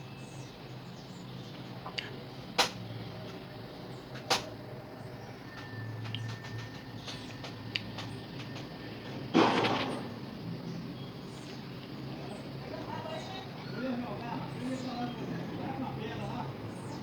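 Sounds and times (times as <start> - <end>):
steady low hum: 0.0 - 17.0
light ticks: 5.5 - 8.8.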